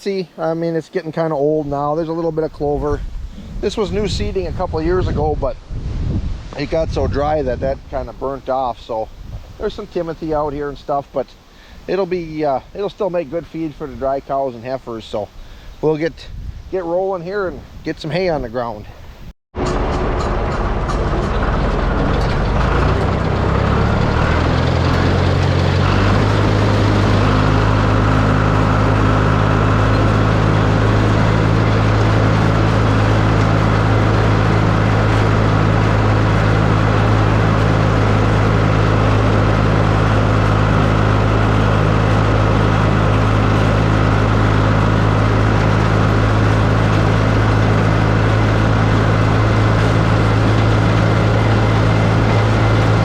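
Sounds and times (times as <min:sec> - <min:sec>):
tractor engine running: 0:01.5 - 0:05.3, 0:19.6 - 0:53.0.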